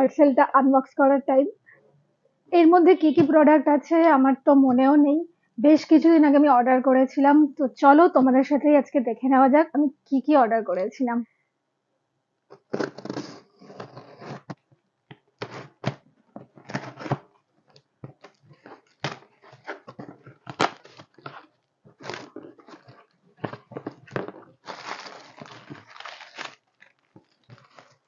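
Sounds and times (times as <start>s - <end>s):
packaging tearing and crinkling: 18.2s - 28.0s.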